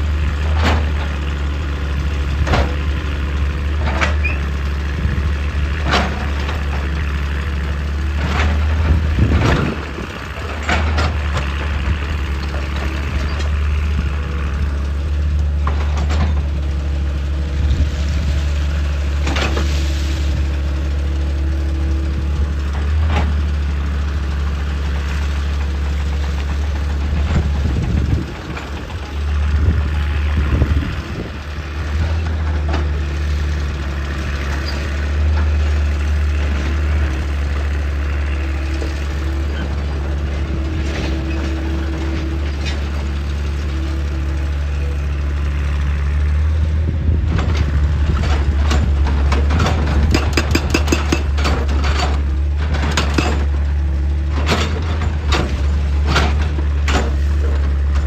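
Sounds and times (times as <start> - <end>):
excavator diesel engine running: 0.0 - 58.0
clicks and knocks: 48.7 - 52.2.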